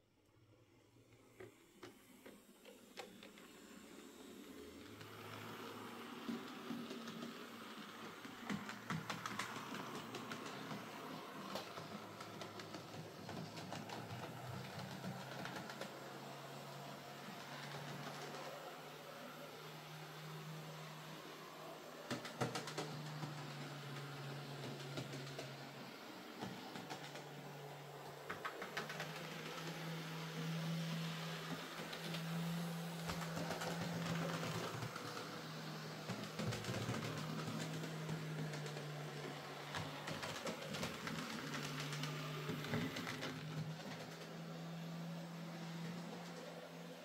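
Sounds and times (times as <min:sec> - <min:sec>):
model train motor whine: 0:01.3 - 0:47.0
wheels clicking on rails: 0:04.8 - 0:47.0.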